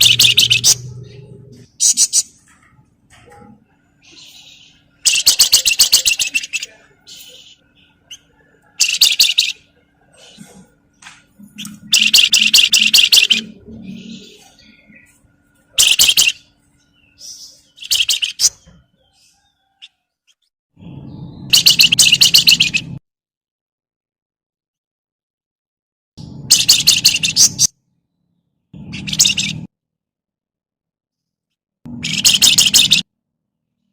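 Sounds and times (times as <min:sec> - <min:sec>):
low rumble: 0:00.0 - 0:01.8
bird rattling chatter calls: 0:04.1 - 0:10.5.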